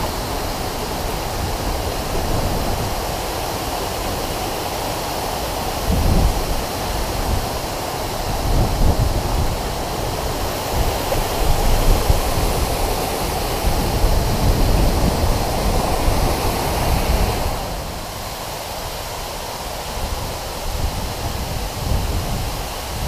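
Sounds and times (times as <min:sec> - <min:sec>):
waterfall rushing: 0:00.0 - 0:23.0.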